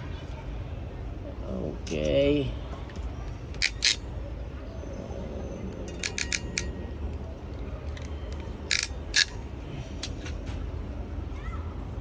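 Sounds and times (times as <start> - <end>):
loud plastic clacks: 2.9 - 4.0, 5.8 - 6.8, 7.9 - 9.4
small hand tools clicking: 3.6 - 4.0, 5.9 - 6.7, 8.7 - 9.4.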